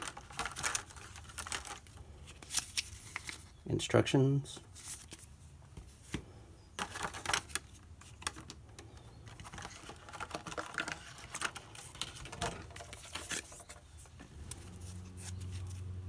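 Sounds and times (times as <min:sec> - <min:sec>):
packaging rustling: 0:00.0 - 0:03.6, 0:06.8 - 0:15.9.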